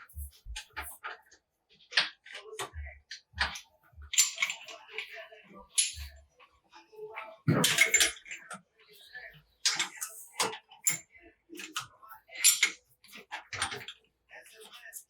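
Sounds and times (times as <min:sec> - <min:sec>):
metal tools clinking and knocking: 0:03.4 - 0:06.2, 0:07.5 - 0:08.6, 0:09.6 - 0:11.0, 0:11.6 - 0:14.0.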